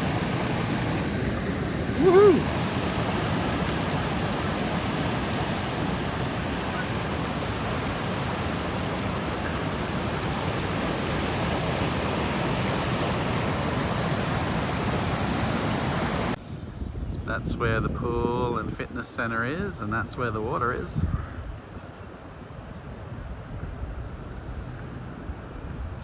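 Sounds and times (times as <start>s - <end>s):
floodwater rushing: 0.0s - 16.4s.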